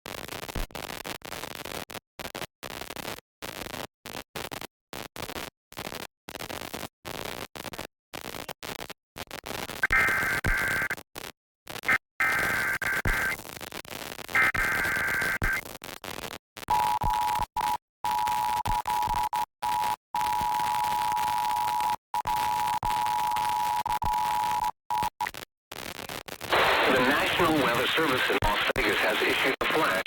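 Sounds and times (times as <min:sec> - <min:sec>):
static hiss: 0:09.4 - 0:11.0, 0:11.8 - 0:16.4, 0:25.2 - 0:30.0.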